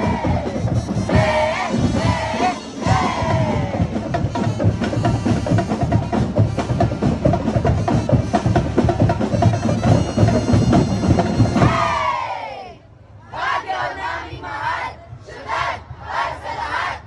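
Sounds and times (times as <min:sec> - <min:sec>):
percussion ensemble drumming: 0:00.0 - 0:12.0.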